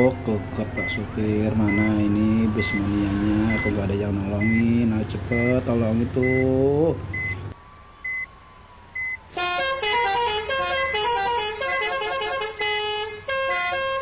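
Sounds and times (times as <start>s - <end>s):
bus multi-tone horn melody: 0.0s - 7.5s, 9.3s - 14.0s
short high beeps: 3.5s - 4.6s.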